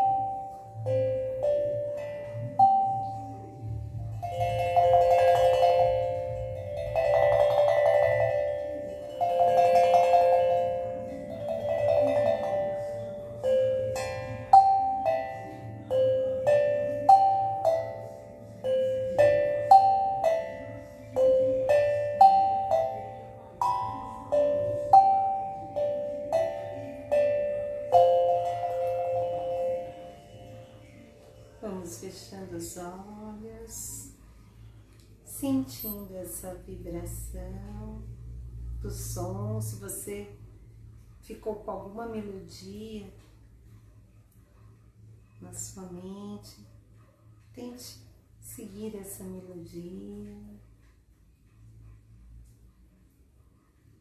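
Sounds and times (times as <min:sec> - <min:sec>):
steel tongue drum melody: 0:00.0 - 0:32.0.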